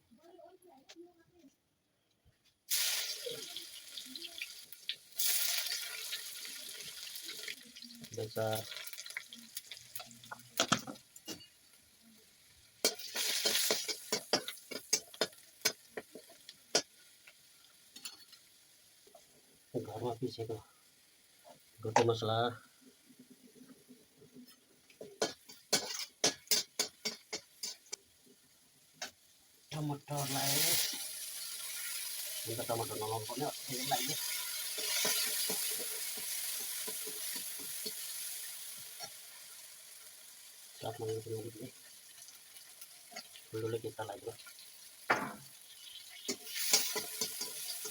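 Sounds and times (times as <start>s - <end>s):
spices frying in hot oil: 2.4s - 47.9s
spoon scraping against pan: 12.8s - 17.0s, 24.4s - 28.0s, 33.7s - 39.3s, 45.7s - 47.9s.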